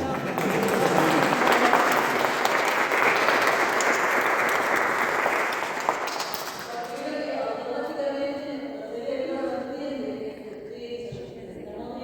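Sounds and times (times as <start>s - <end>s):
people applauding: 0.0s - 7.1s.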